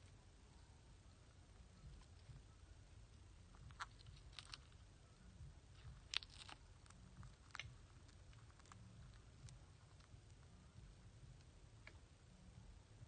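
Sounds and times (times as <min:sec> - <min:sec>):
low hum: 0:00.0 - 0:13.0.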